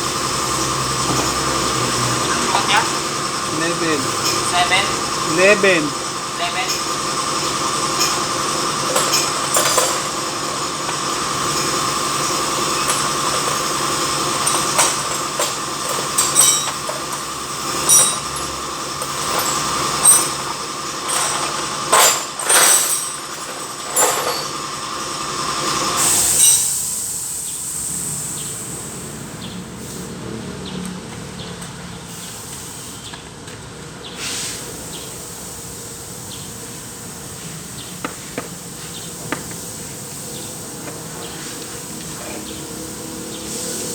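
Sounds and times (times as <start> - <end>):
metallic clicks and clinks: 8.0 - 24.7.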